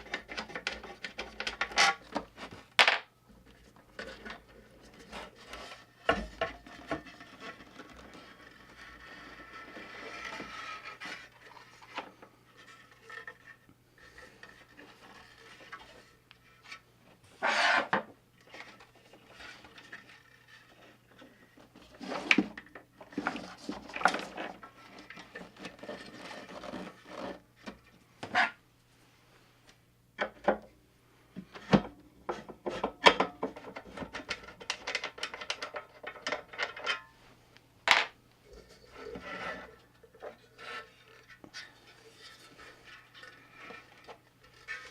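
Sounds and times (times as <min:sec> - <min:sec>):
scraping and rubbing: 0:03.6 - 0:28.6, 0:38.1 - 0:44.9.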